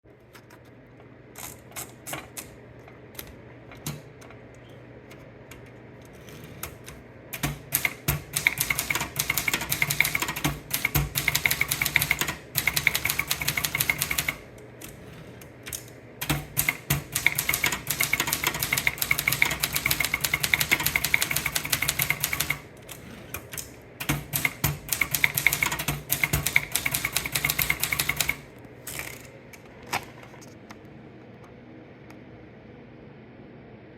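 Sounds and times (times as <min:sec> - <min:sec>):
typewriter typing: 0:05.5 - 0:29.3.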